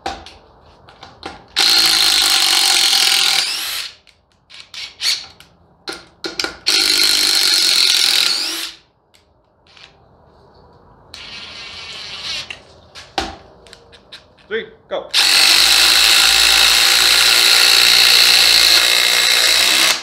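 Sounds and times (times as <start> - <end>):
impact driver driving screws: 1.6 - 5.5, 15.2 - 20.0.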